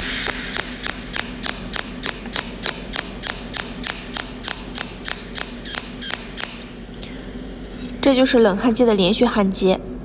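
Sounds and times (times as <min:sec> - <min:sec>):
welding arc pulses snapping: 0:00.0 - 0:06.7.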